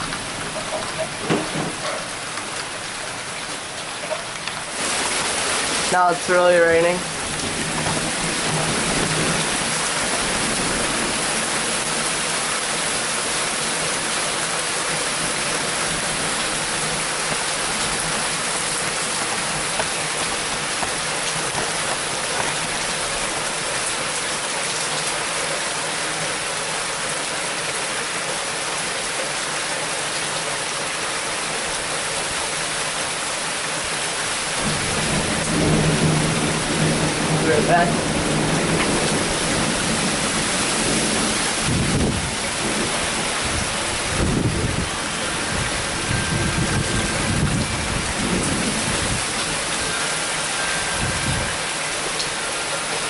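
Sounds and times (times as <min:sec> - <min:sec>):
heavy rain pouring: 0:00.0 - 0:53.0.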